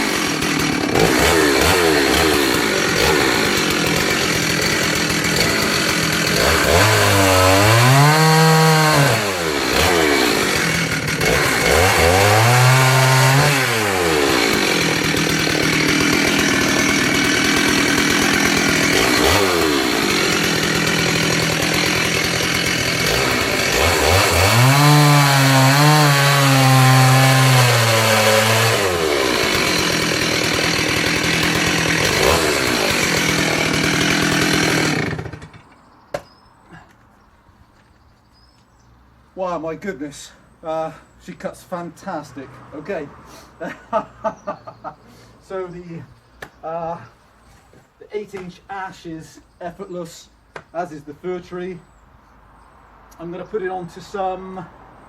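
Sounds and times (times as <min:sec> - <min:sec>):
chainsaw cutting logs: 0:00.0 - 0:36.9.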